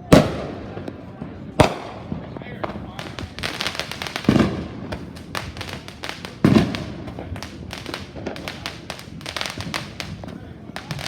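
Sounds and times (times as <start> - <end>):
firework boom: 0.0 - 11.0
fireworks crackling: 0.0 - 11.0.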